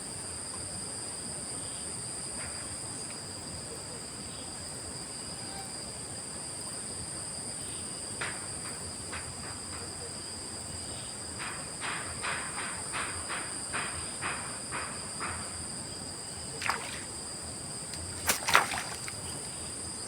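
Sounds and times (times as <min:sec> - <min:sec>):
insect chorus: 0:00.0 - 0:20.0.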